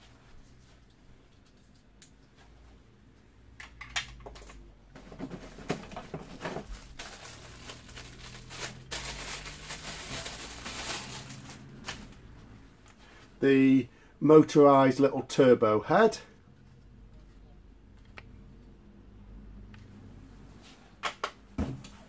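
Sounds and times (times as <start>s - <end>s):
clicks and knocks of parts: 3.6s - 6.7s
plastic and cardboard rustling: 4.4s - 13.1s.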